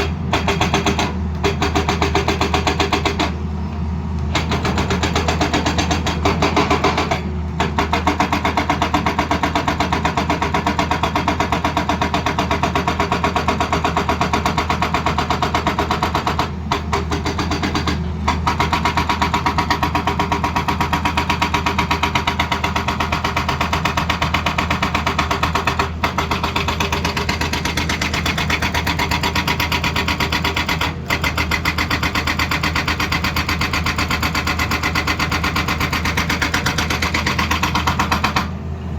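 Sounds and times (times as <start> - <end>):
hydraulic rock breaker hammering stone: 0.0 - 3.5, 4.2 - 38.6
low engine hum: 2.5 - 6.8.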